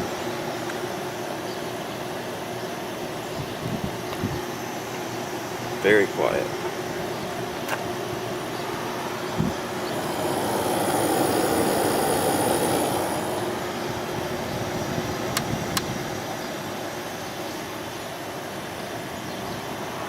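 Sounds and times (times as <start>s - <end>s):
air conditioner humming: 0.0s - 19.9s
sharp clicks: 14.0s - 15.9s.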